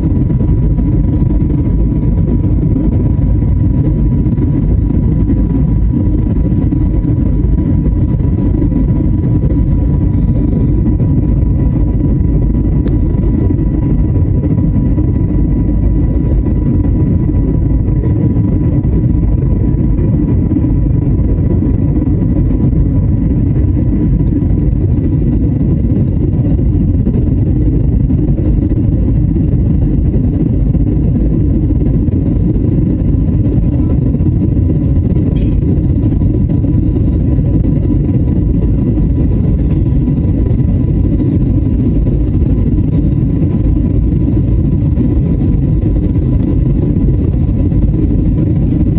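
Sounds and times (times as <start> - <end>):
faint steady whine: 0.0 - 48.9
jet engine and airflow rumble: 0.0 - 48.9.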